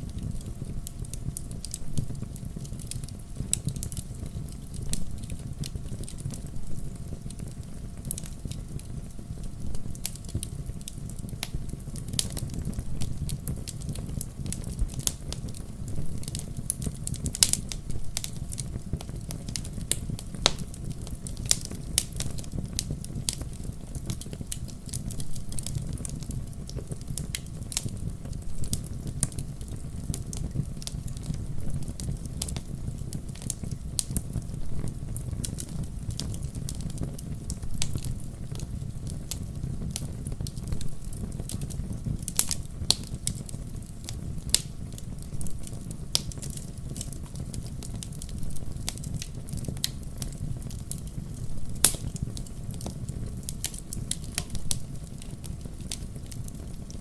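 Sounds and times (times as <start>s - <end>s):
campfire crackling and popping: 0.0s - 57.0s
low rumble of flames: 0.0s - 57.0s.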